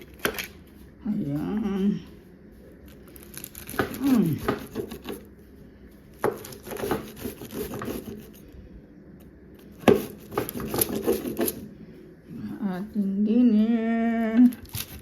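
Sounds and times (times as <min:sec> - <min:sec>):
pizza cutter scraping: 0:03.6 - 0:05.3, 0:06.2 - 0:08.4, 0:09.8 - 0:11.7.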